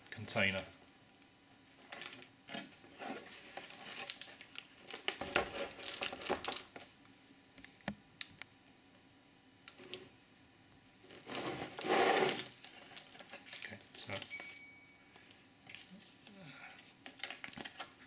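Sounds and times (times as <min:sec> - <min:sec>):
plastic packaging crinkling: 0:01.7 - 0:02.3, 0:03.2 - 0:06.9, 0:11.2 - 0:14.4, 0:16.8 - 0:18.0.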